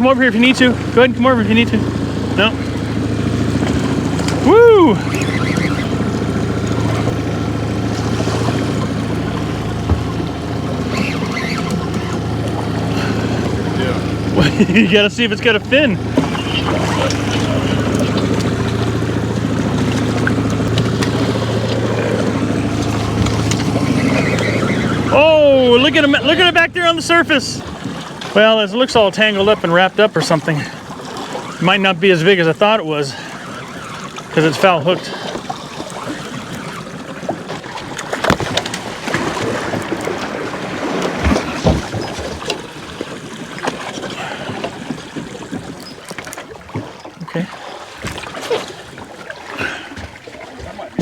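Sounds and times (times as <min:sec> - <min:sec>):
boat motor humming: 0:00.0 - 0:51.0.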